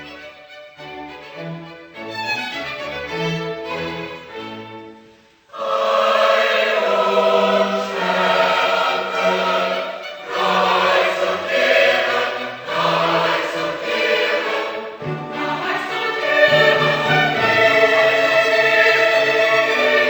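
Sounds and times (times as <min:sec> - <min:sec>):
choir singing: 0:05.5 - 0:20.0.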